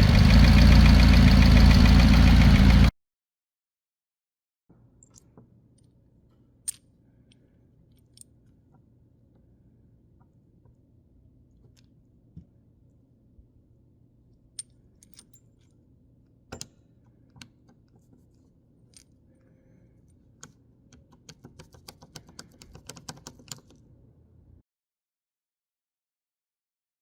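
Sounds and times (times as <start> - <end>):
faint steady hum: 4.7 - 21.2.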